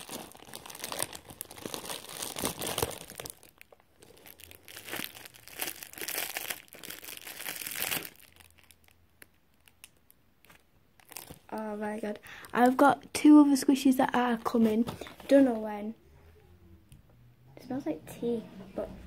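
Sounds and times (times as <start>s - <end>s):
packaging tearing: 0.0s - 8.8s
packaging crinkling and rustling: 0.0s - 12.8s.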